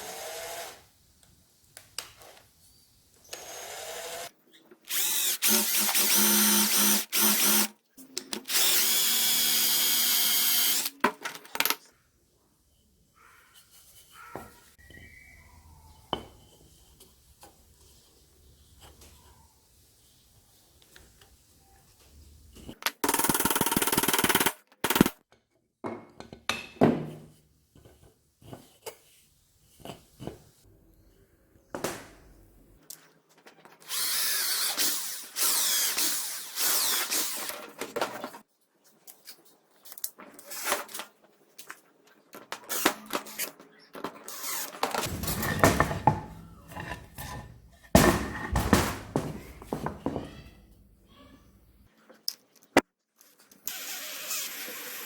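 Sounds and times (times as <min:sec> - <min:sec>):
electric hand drill running: 0:00.0 - 0:00.8, 0:03.3 - 0:04.3, 0:04.9 - 0:07.7, 0:08.5 - 0:10.9, 0:33.9 - 0:37.5.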